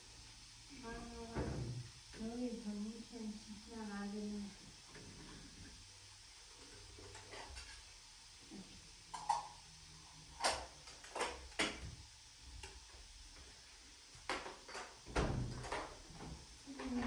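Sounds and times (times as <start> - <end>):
kitchenware clinking: 6.5 - 7.9, 9.1 - 9.6.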